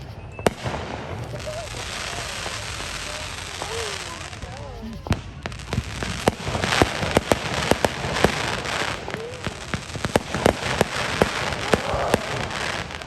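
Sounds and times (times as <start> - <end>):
fireworks banging: 0.0 - 13.0
fireworks crackling: 0.0 - 13.0.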